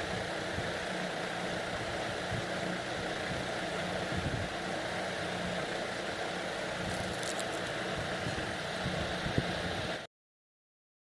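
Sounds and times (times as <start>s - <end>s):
ceiling fan running: 0.0s - 10.1s
fan click: 6.8s - 9.6s.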